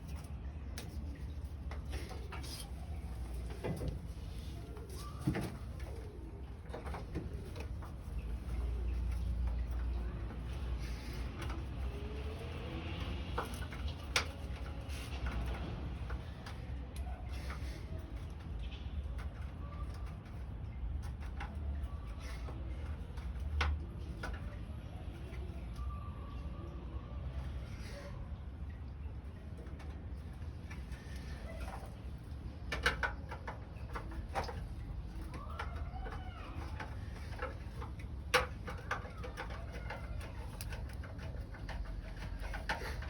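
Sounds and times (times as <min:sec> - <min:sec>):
birds cooing: 0:04.4 - 0:09.4
clicks and knocks on pump fittings: 0:29.5 - 0:43.0.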